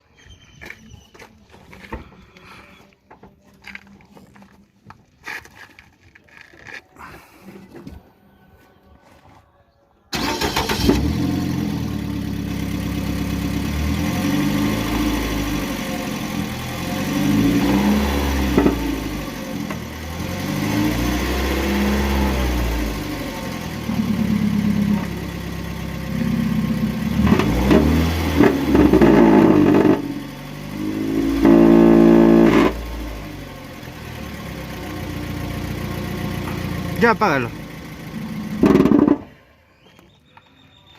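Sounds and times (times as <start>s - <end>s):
car engine revving: 10.2s - 39.5s.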